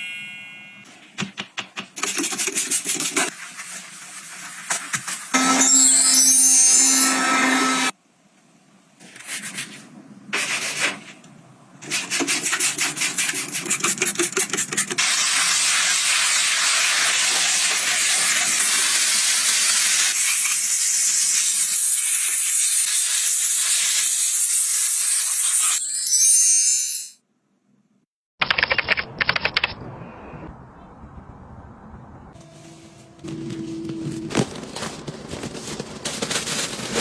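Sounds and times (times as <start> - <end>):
rubbing and scrubbing: 2.0 - 5.3, 11.8 - 18.9, 32.4 - 37.0.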